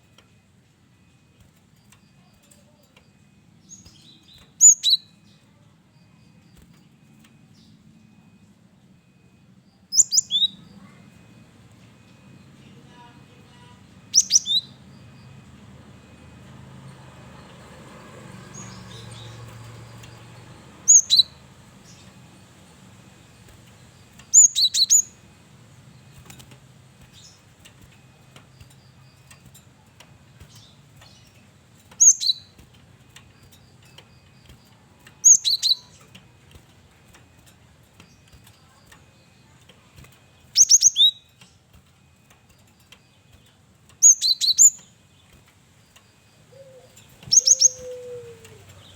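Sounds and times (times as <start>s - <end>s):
faint low hum: 0.0s - 48.9s
bird singing whistled notes: 3.6s - 5.4s, 9.8s - 10.9s, 14.0s - 15.2s, 18.4s - 22.6s, 23.3s - 25.2s, 32.0s - 32.7s, 33.7s - 36.2s, 40.4s - 41.4s, 42.8s - 45.0s, 46.4s - 48.9s.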